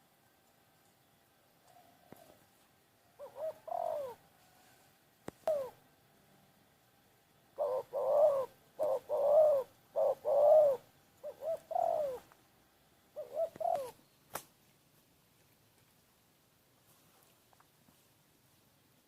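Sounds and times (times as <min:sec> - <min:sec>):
dove cooing: 0:01.6 - 0:04.7, 0:05.3 - 0:05.9, 0:07.5 - 0:12.4, 0:13.1 - 0:14.1.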